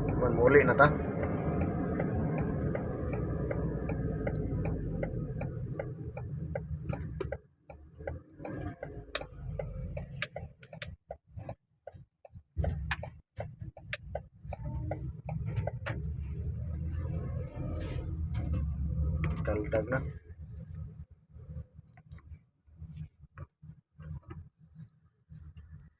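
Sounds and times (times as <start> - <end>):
regular ticking: 0.0 - 16.5
road and engine rumble: 0.0 - 25.9.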